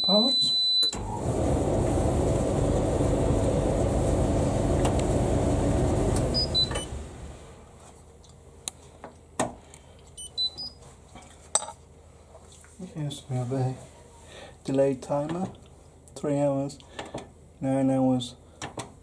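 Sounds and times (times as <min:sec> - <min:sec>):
tumble dryer rumbling: 0:01.0 - 0:07.7.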